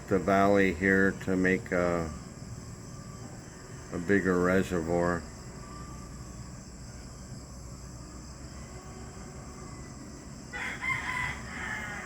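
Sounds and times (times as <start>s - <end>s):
crickets chirping: 0.0s - 12.0s
rooster crowing: 9.2s - 12.0s.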